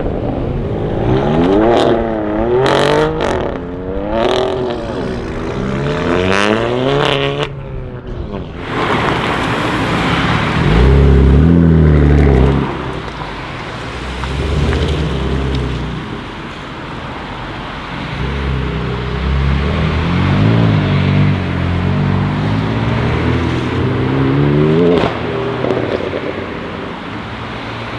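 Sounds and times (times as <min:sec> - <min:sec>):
car engine accelerating hard: 0:08.6 - 0:27.9.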